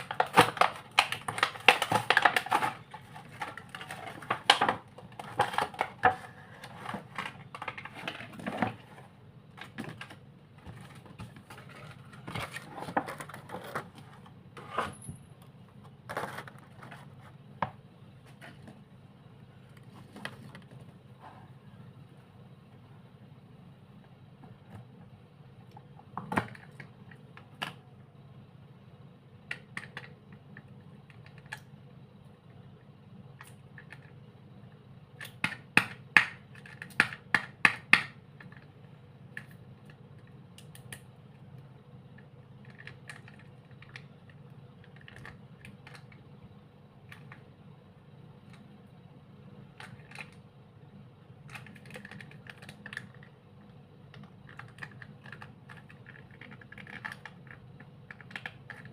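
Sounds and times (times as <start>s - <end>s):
hands tapping packaging: 0.0s - 6.2s
faint low hum: 0.0s - 58.9s.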